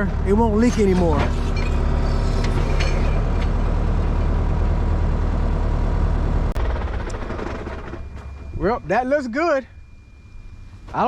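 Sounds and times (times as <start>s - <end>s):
heavy vehicle engine idling: 3.2s - 11.0s.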